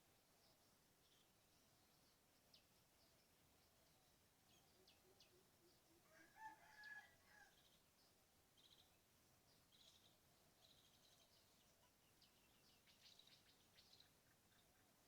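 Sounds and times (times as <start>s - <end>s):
small birds chirping: 0.0s - 6.0s, 6.6s - 15.0s
faint rooster crowing: 5.9s - 7.8s.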